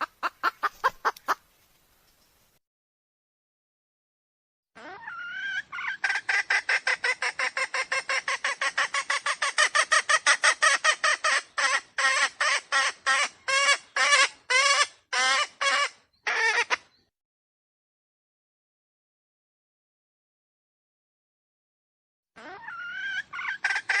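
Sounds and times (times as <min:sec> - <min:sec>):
junglefowl calling and clucking: 0:00.0 - 0:01.5, 0:04.8 - 0:17.1, 0:22.4 - 0:24.0.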